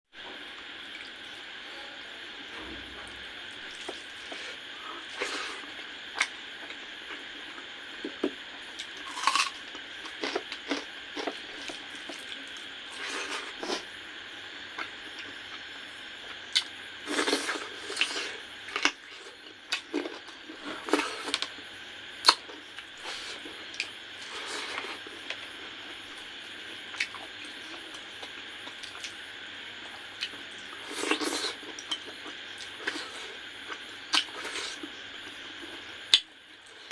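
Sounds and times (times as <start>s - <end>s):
person chewing food: 5.1s - 13.8s.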